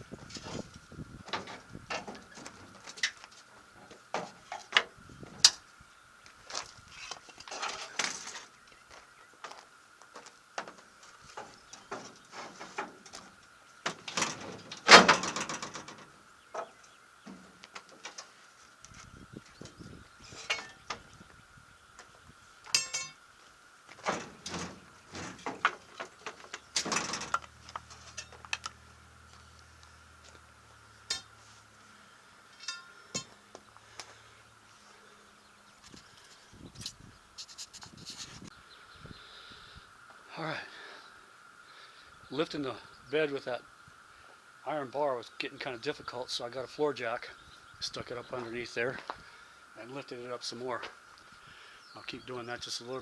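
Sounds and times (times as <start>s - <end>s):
metal pry bar and wood clattering: 0.1s - 5.7s, 6.5s - 8.8s, 10.2s - 21.2s, 22.0s - 23.3s, 23.9s - 30.4s, 31.0s - 31.6s, 32.5s - 34.1s.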